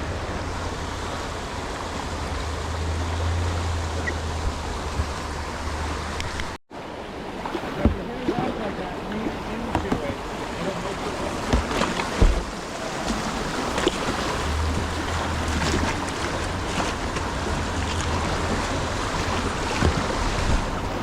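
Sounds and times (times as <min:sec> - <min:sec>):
wind rumbling on microphone: 0:00.0 - 0:06.6, 0:07.5 - 0:21.0
river water rushing: 0:00.0 - 0:21.0
sharp splashes: 0:07.3 - 0:21.0.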